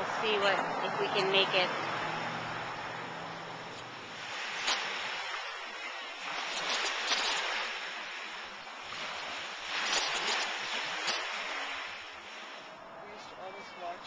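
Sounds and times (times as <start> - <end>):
small waves washing on shore: 0.0 - 14.0.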